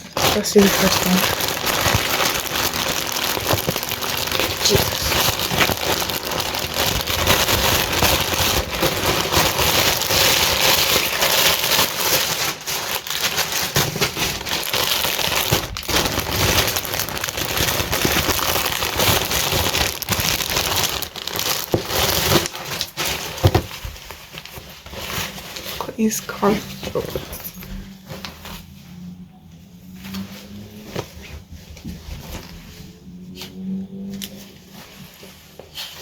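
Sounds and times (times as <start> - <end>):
packaging crinkling and rustling: 0.0 - 29.1, 29.9 - 36.0.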